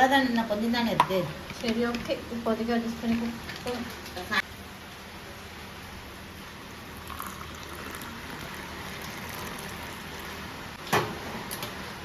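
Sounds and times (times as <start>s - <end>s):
milk bubbling in a pan: 6.5s - 10.8s.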